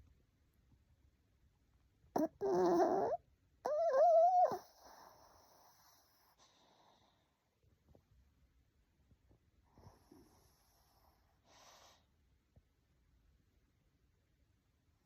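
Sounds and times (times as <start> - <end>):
dog whimpering: 2.2 - 5.7.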